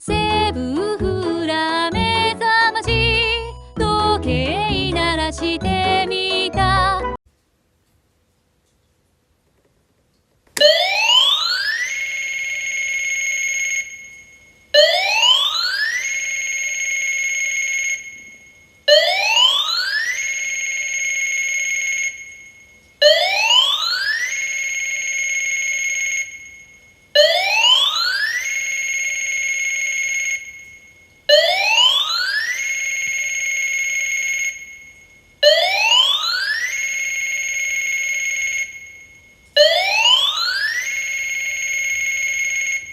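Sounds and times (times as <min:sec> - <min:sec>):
electronic alarm clock ringing: 0:10.6 - 0:42.9.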